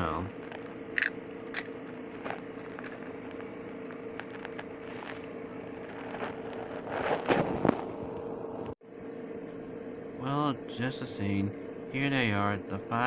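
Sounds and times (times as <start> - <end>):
faint steady hum: 0.0 - 13.0
plastic rustle: 2.1 - 3.5, 4.1 - 8.1.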